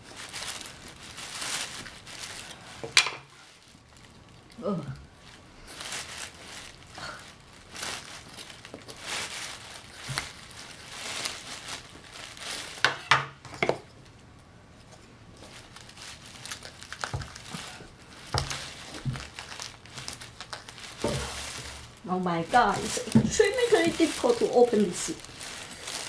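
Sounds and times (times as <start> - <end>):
fruit crinkling and tearing: 0.0 - 26.0.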